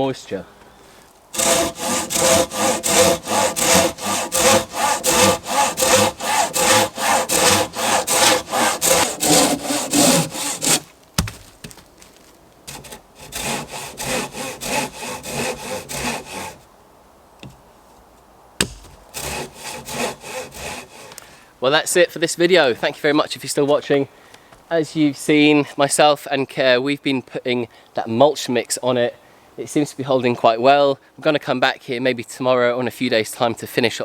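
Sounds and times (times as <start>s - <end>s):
hand saw cutting wood: 1.3s - 16.6s, 18.6s - 21.4s.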